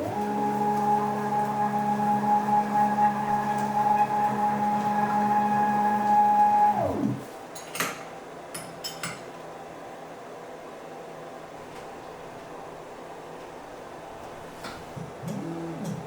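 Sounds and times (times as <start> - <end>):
milling machine spindle whining: 0.0 - 7.2, 15.0 - 16.0
low steady hum: 14.0 - 16.0.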